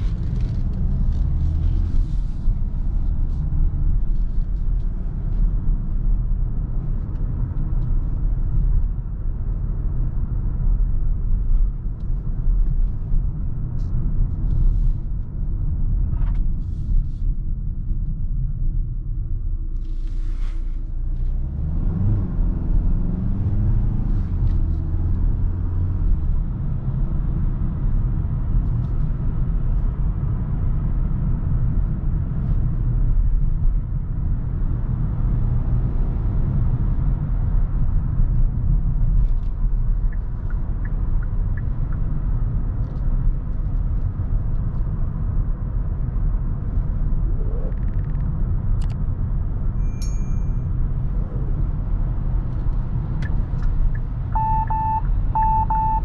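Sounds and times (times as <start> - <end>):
diesel engine driving: 20.8 - 56.0
short electronic beep: 54.4 - 56.0.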